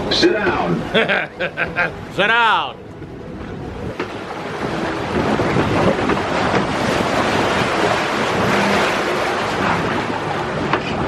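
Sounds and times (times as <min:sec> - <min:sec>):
water rushing along flume channel: 0:00.0 - 0:11.0
wind buffeting microphone: 0:02.8 - 0:11.0.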